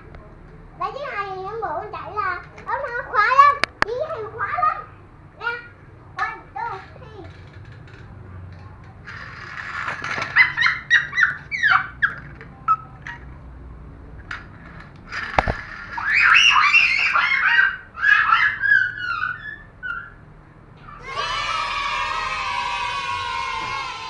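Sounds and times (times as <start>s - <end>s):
children squealing and shrieking: 10.1s - 12.2s, 15.9s - 20.2s, 20.8s - 24.0s.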